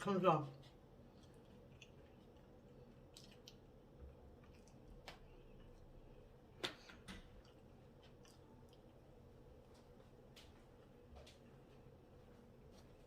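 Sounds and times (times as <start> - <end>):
wet mouth clicks and smacks: 1.2 - 3.7.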